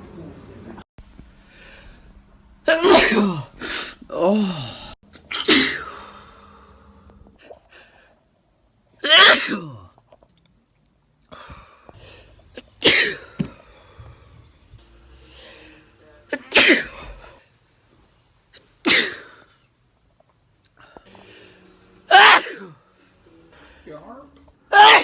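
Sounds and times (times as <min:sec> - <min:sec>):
person sneezing: 0:02.7 - 0:07.1, 0:09.0 - 0:09.9, 0:12.8 - 0:13.5, 0:16.3 - 0:17.4, 0:18.8 - 0:19.4, 0:22.1 - 0:22.8, 0:24.7 - 0:25.0.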